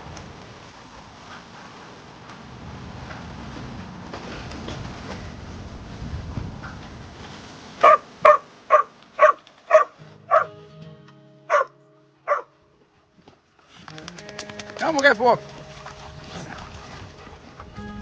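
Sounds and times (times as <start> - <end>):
dog barking: 7.8 - 10.5, 11.5 - 11.7, 12.3 - 12.5.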